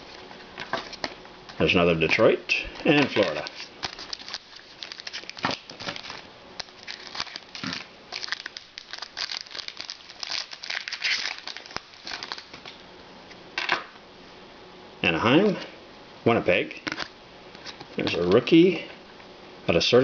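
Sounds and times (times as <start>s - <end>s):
card pack wrapper crinkling: 2.8s - 12.8s
wrapper rustle: 2.8s - 12.8s.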